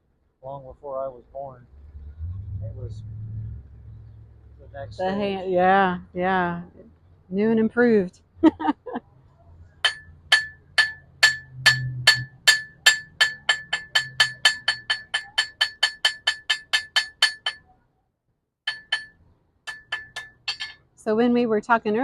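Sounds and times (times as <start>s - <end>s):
hammer striking anvil: 9.8s - 17.6s, 18.7s - 20.8s.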